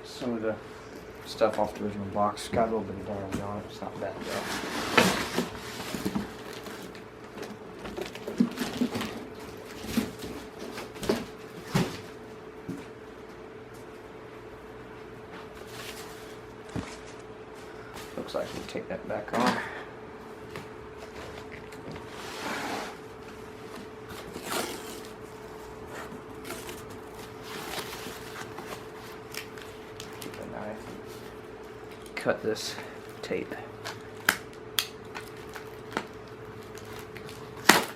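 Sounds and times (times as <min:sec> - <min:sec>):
faint steady hum: 0:00.0 - 0:37.9
cardboard packaging rustling: 0:03.8 - 0:12.2, 0:15.5 - 0:17.3, 0:23.0 - 0:32.2, 0:33.0 - 0:37.9.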